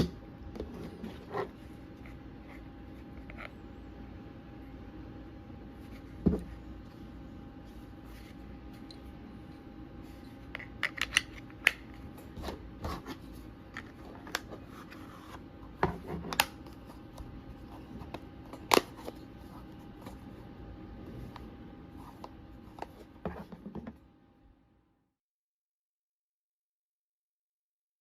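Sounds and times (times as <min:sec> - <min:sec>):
faint steady hum: 0:00.0 - 0:25.2.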